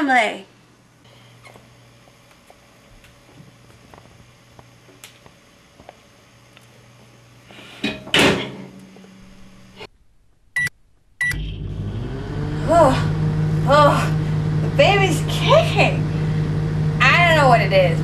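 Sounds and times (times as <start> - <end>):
microwave oven humming: 0.0 - 18.0.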